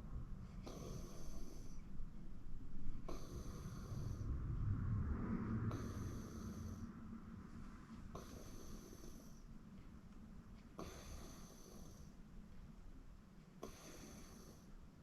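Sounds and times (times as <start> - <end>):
person snoring: 0.6 - 1.8, 3.1 - 4.3, 5.7 - 6.8, 8.1 - 9.4, 10.8 - 12.1.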